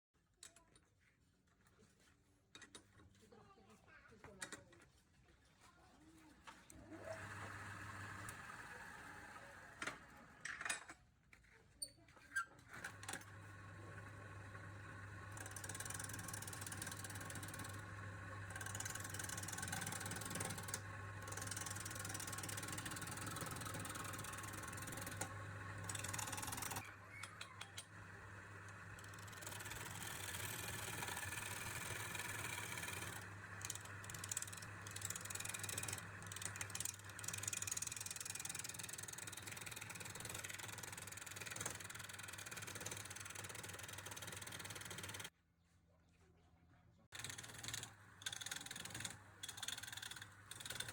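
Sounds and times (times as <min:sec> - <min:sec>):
turning tool cutting wood: 0:06.9 - 0:10.0, 0:12.8 - 0:45.3, 0:47.2 - 0:50.9
wood lathe motor hum: 0:06.9 - 0:10.2, 0:12.9 - 0:45.3, 0:47.2 - 0:50.9.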